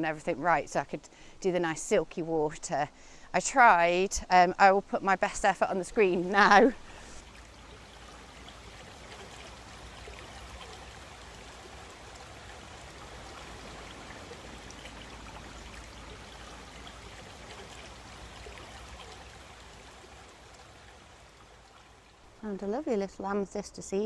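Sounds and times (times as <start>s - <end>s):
stream babbling over rocks: 5.3s - 22.8s.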